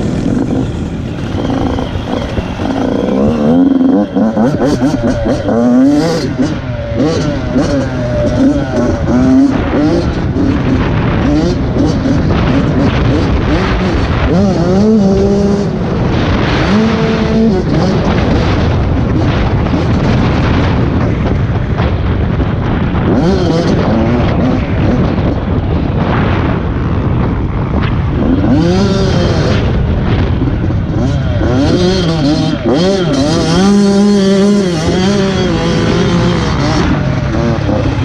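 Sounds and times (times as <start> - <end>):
small motorbike engine revving: 0.0 - 20.7, 28.2 - 29.9, 30.8 - 38.0
wind rush on camera: 0.0 - 38.0.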